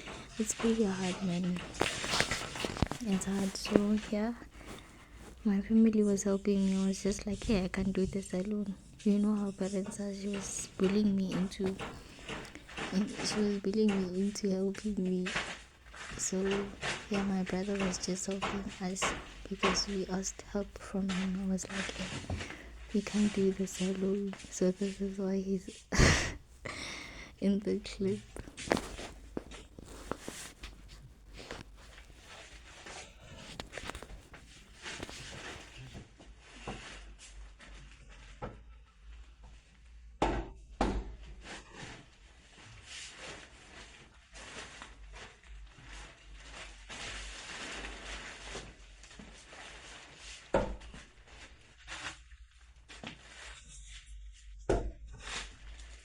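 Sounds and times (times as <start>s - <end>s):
bed knocks and thumps: 0.0s - 36.0s
mattress rustling: 0.0s - 36.0s.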